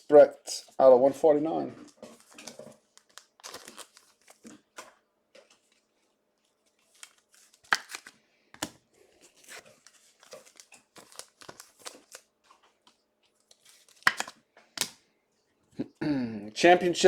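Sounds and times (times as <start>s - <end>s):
cards and plastic packaging rustling: 1.8s - 15.0s.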